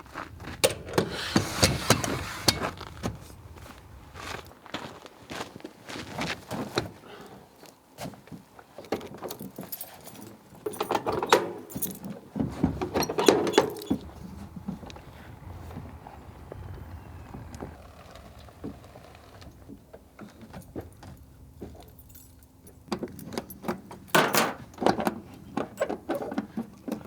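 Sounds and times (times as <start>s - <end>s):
faint low rumble: 2.1s - 4.7s, 13.9s - 22.4s.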